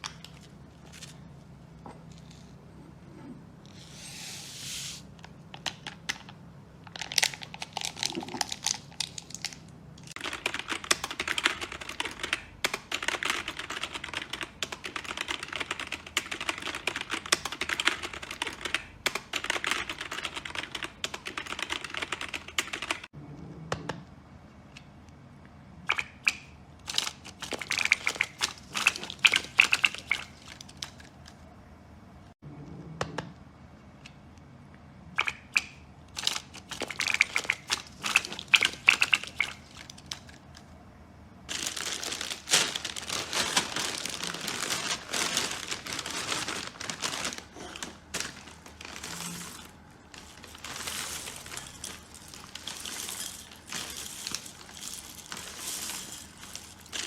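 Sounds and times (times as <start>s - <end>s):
crinkling and crackling: 5.2s - 10.2s, 41.5s - 57.0s.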